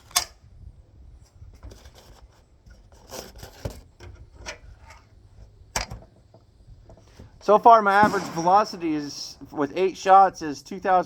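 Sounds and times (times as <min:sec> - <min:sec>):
handling rubbing and scraping: 0:01.2 - 0:10.0.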